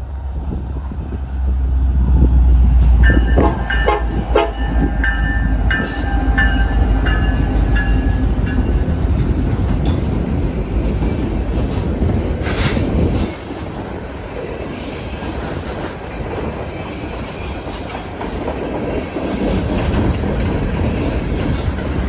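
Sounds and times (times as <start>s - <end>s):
diesel locomotive rumbling: 0.0s - 22.0s
air horn short toots: 3.3s - 4.8s.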